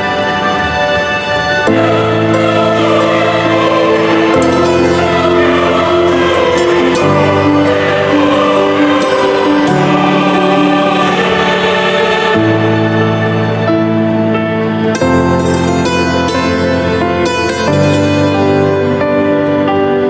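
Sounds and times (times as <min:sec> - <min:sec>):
choir singing slow chords: 0:00.0 - 0:20.0.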